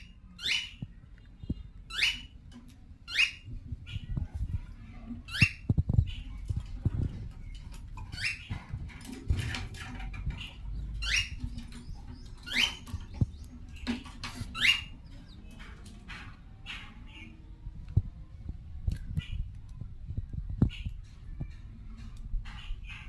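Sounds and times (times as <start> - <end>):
parrot squeaking: 0.0 - 0.8, 1.9 - 2.4, 3.1 - 4.1, 5.2 - 6.3, 8.0 - 8.7, 10.2 - 15.4
knocks and rustling: 3.5 - 16.9.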